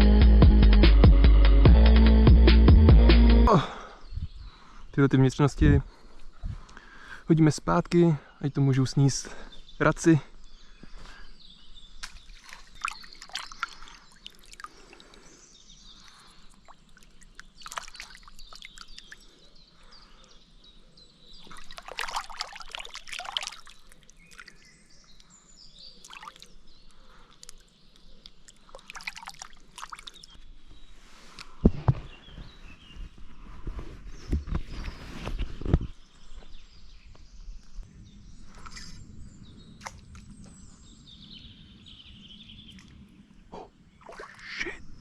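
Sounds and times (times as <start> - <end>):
water sloshing and splashing: 12.0 - 15.3, 16.0 - 19.4, 21.4 - 24.8, 26.0 - 26.6, 28.2 - 30.4, 44.0 - 44.6.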